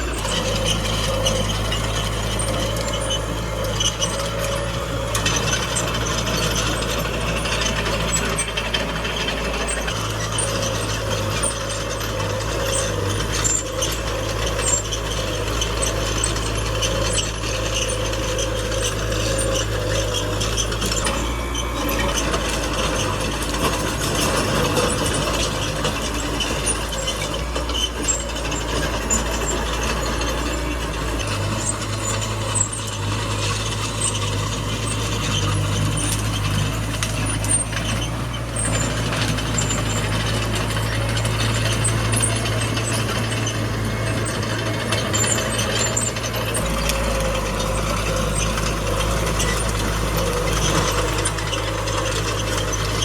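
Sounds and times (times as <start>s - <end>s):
diesel engine drone: 0.0s - 53.0s.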